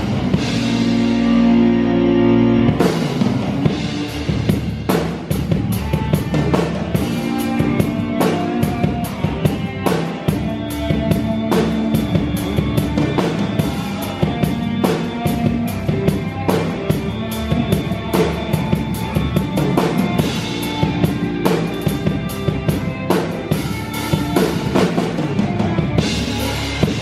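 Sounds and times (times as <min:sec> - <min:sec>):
rock band playing: 0:00.0 - 0:27.0.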